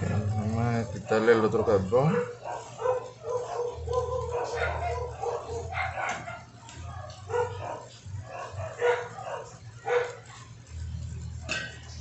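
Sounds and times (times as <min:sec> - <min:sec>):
dog barking and yipping: 0:02.0 - 0:10.6.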